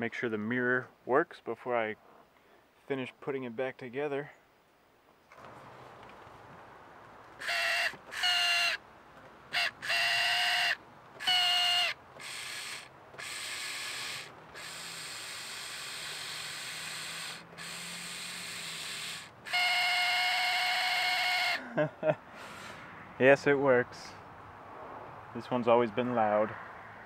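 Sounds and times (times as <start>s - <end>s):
mirror motor whining: 7.4s - 8.8s, 9.5s - 21.6s.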